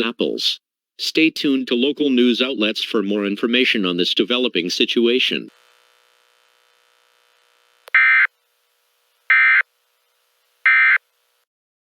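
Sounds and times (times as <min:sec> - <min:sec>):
digital data tone bursts: 0:07.9 - 0:08.3, 0:09.3 - 0:09.6, 0:10.6 - 0:11.0.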